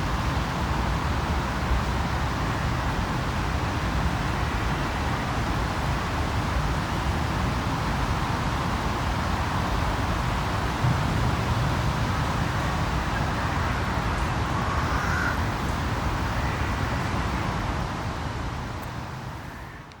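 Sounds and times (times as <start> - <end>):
distant road traffic: 8.7 - 20.0.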